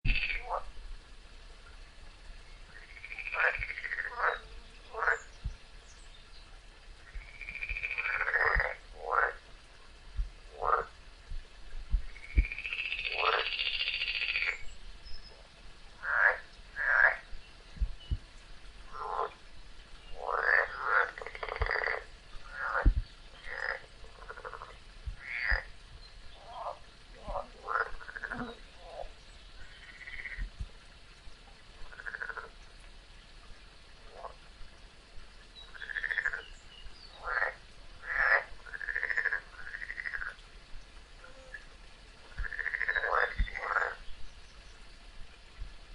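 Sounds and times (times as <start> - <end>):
frogs croaking: 0.1 - 0.7, 2.6 - 5.5, 7.0 - 9.5, 10.5 - 11.0, 12.1 - 18.2, 18.9 - 19.4, 20.0 - 30.6, 31.8 - 32.6, 34.0 - 34.4, 35.5 - 40.4, 41.2 - 44.1.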